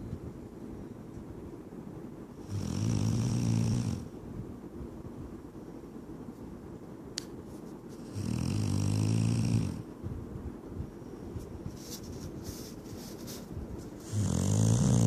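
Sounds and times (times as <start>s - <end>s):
dog snoring: 2.4s - 4.1s, 8.0s - 9.9s, 14.0s - 15.0s.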